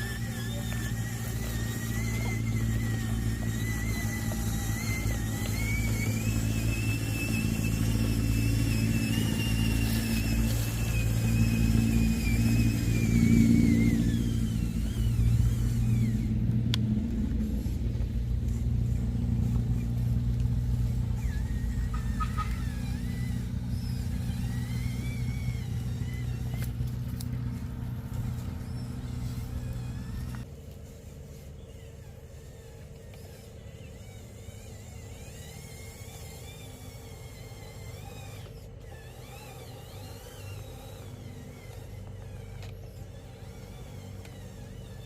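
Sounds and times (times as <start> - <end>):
high motor whine: 0.0 - 45.0
low engine-like hum: 0.0 - 45.0.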